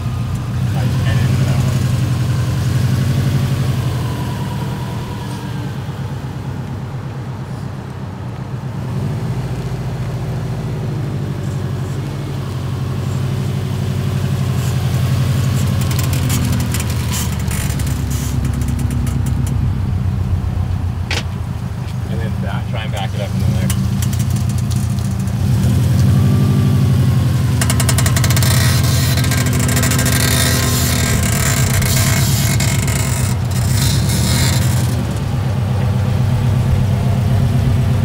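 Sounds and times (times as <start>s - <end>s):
wheel creaking and screeching: 0.0s - 6.8s, 11.4s - 36.7s
car engine drone: 0.0s - 38.0s
sharp clicks or creaks: 14.6s - 19.8s, 27.5s - 35.3s.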